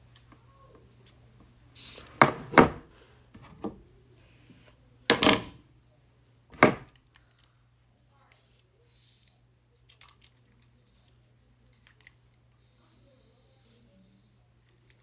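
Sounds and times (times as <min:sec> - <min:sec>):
objects knocking and clunking: 0:02.1 - 0:02.8, 0:05.1 - 0:05.6, 0:06.5 - 0:07.0.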